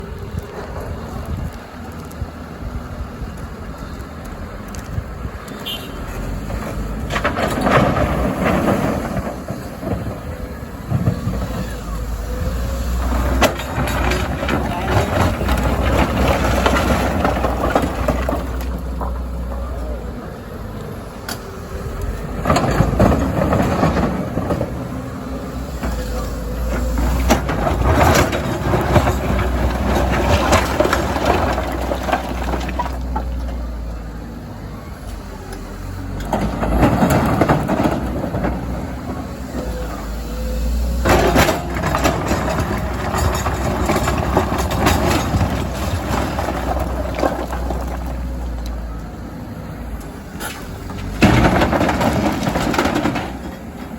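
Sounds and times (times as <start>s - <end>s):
excavator engine hum: 0.0s - 53.9s
rock scraping and clattering: 6.4s - 19.6s, 22.0s - 33.6s, 40.9s - 48.7s, 50.4s - 53.9s.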